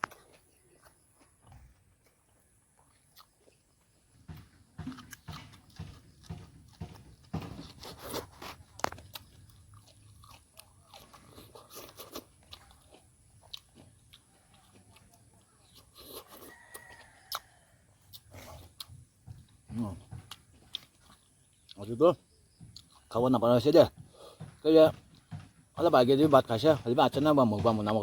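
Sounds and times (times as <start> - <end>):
person crunching and chewing: 2.0 - 21.8.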